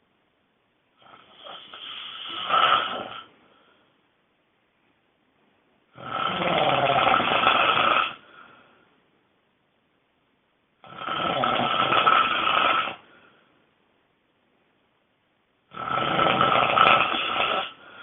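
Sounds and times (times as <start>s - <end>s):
person snoring loudly: 1.0s - 3.3s, 6.0s - 8.3s, 10.8s - 13.1s, 15.7s - 18.0s.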